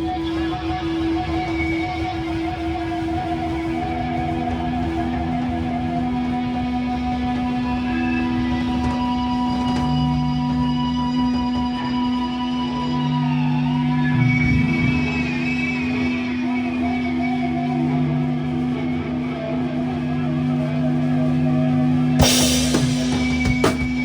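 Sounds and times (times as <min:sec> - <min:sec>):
bending guitar lines: 0:00.0 - 0:24.0
cymbal crash: 0:22.2 - 0:24.0
rock band playing: 0:22.2 - 0:24.0.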